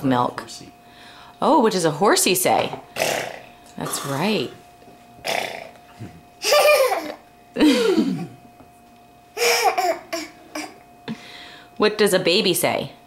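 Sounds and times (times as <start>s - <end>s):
toddler laughing: 6.4s - 8.2s, 9.4s - 10.8s.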